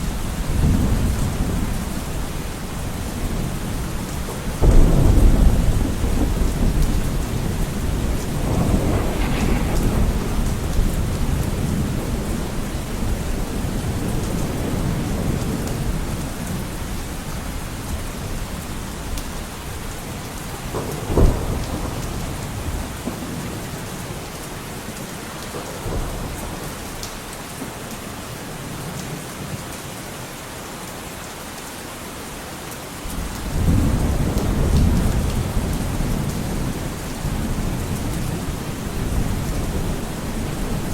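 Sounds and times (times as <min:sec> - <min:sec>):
rolling thunder: 0:00.0 - 0:16.9, 0:19.7 - 0:24.2, 0:33.2 - 0:40.9
rain falling: 0:00.0 - 0:40.9
sharp thunder crack: 0:04.6 - 0:14.8.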